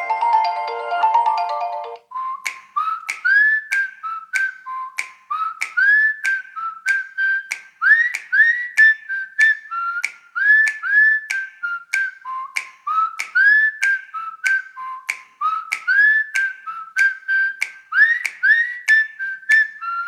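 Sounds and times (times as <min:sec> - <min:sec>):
mallet-percussion ringtone: 0:00.0 - 0:02.0
whistled ringtone melody: 0:00.0 - 0:03.8
finger snaps: 0:02.4 - 0:19.8.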